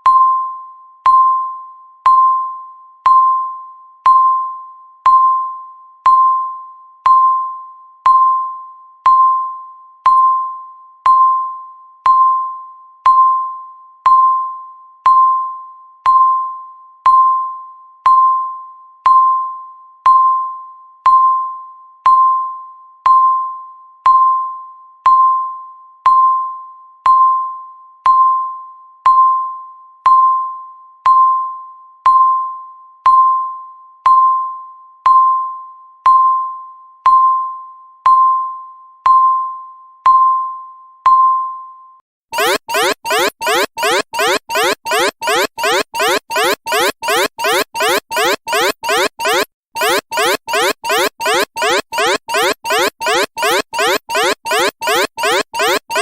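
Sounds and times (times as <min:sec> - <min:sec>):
countdown timer beeping: 0:42.4 - 0:56.0.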